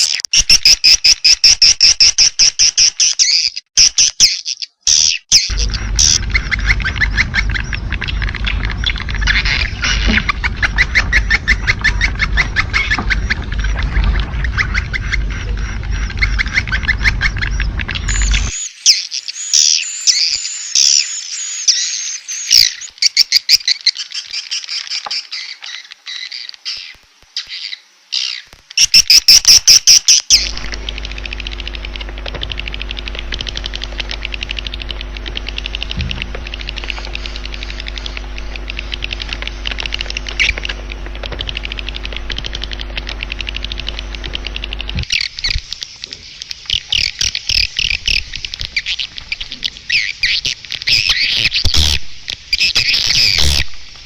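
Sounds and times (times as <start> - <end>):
low hum: 5.5 - 18.6, 30.3 - 54.0.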